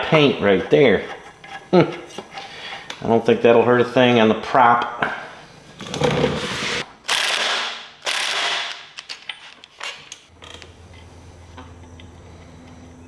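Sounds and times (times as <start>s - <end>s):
mechanical ratcheting: 7.1s - 8.9s.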